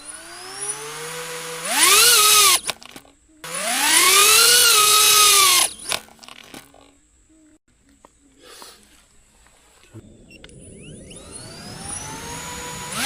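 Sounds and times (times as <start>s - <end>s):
drone motors whining: 0.0s - 6.0s, 9.9s - 13.0s.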